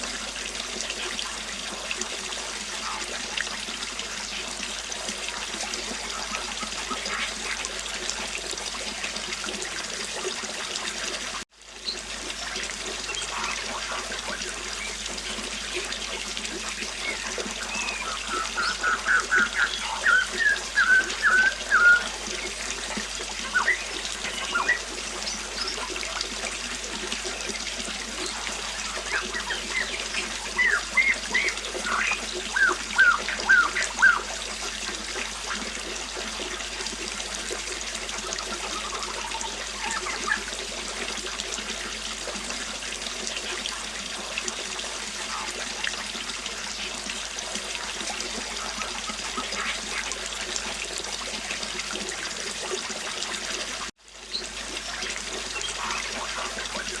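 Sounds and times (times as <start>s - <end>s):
river water flowing: 0.0s - 57.0s
songbirds chirping: 16.7s - 26.0s, 27.2s - 34.3s.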